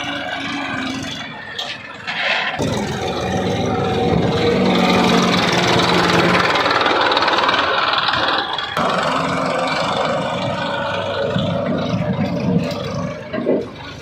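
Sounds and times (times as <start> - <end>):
heavy diesel engine running: 0.0 - 14.0.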